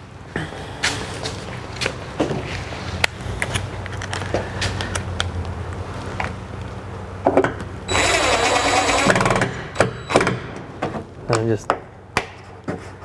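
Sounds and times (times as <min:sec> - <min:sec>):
cordless power driver whining: 0:07.9 - 0:10.4.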